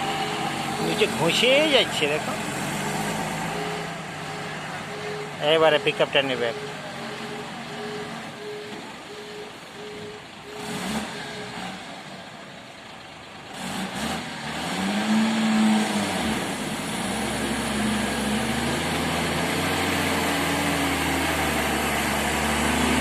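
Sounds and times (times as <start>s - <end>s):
vehicle engine revving: 0.0s - 12.5s, 13.4s - 23.0s
short repeated beeps: 3.4s - 11.8s.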